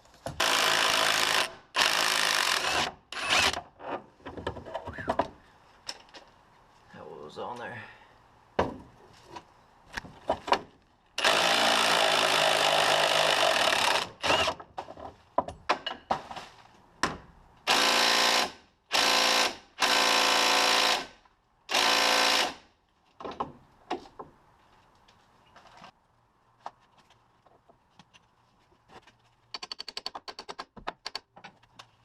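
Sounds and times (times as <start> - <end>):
handheld power tool running: 11.2 - 14.6.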